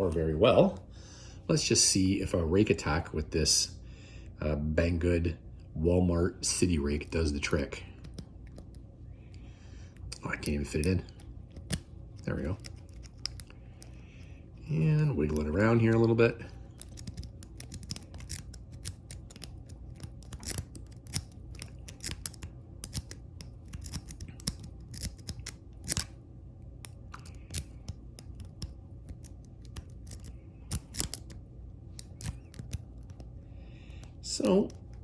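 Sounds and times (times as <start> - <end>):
lock pick clicking in padlock: 16.7 - 26.1, 26.8 - 31.4, 32.0 - 33.2.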